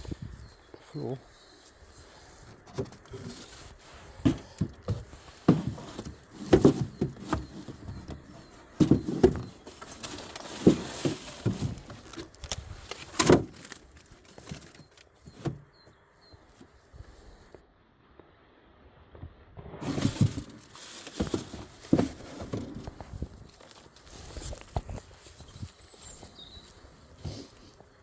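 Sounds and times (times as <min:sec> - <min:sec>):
wooden hive parts knocking: 0:04.1 - 0:15.7.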